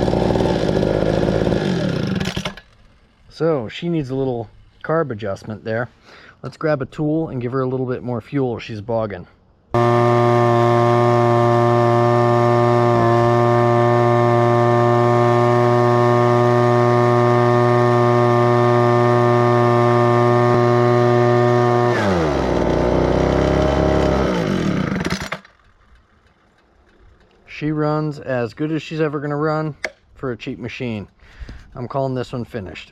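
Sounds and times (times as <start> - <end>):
leaf blower engine running: 0.0 - 4.3, 9.8 - 26.2.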